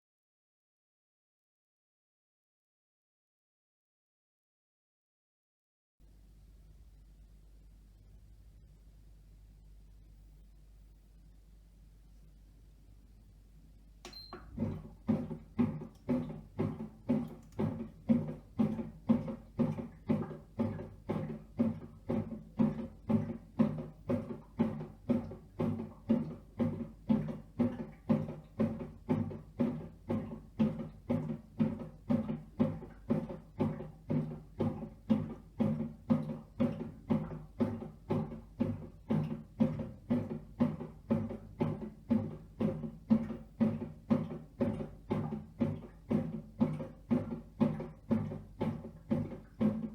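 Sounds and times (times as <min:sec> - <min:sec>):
bread maker kneading: 0:14.1 - 0:49.9.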